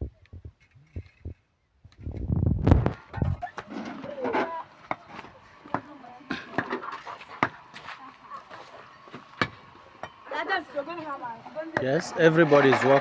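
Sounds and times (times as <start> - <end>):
voices talking: 3.4 - 13.0.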